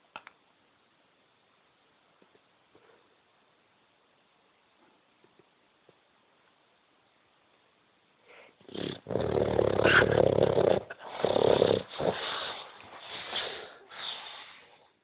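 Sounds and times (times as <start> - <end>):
soft wheezing breaths: 8.2 - 8.8, 10.0 - 15.0
man snoring loudly: 8.7 - 12.2.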